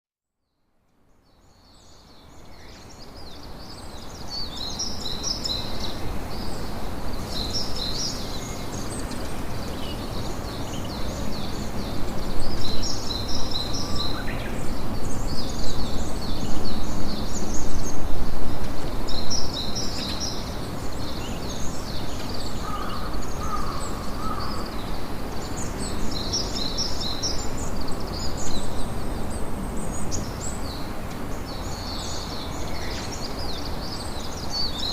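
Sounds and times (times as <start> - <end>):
wind: 0.2 - 34.9.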